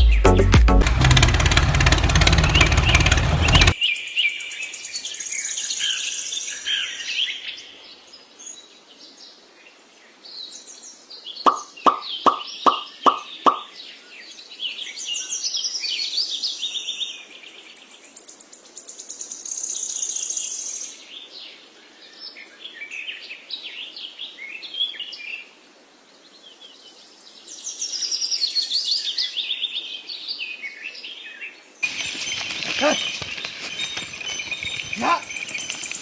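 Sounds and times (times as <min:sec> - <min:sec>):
birds chirping: 0:00.0 - 0:03.8, 0:11.5 - 0:13.7, 0:31.8 - 0:36.0.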